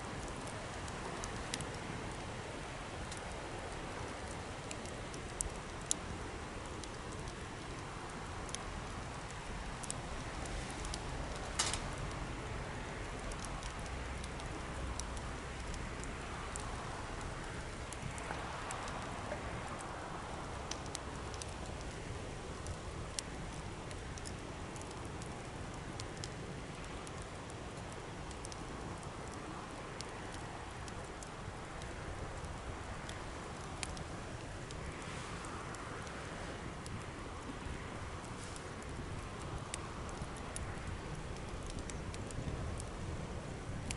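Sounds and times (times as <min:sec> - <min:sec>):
bonfire crackling and hissing: 0:00.0 - 0:43.9.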